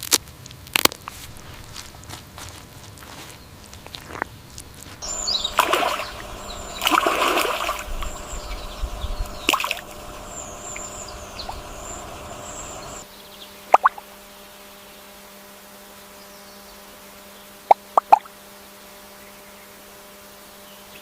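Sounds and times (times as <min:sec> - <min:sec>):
water splashing and sloshing: 0:03.9 - 0:13.0
high wavering chirping: 0:05.0 - 0:13.1.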